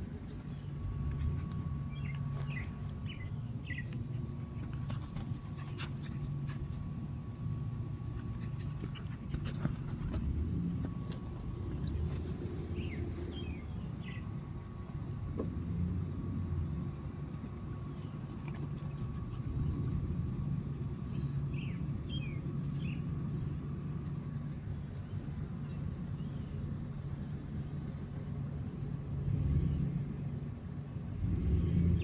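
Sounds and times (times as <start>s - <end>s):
steady low rumble: 0.0s - 32.0s.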